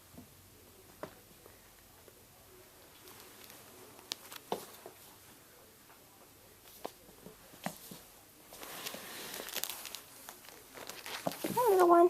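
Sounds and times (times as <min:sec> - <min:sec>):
blanket rustling: 0:08.6 - 0:12.0
kittens tapping and scuffing: 0:09.7 - 0:12.0.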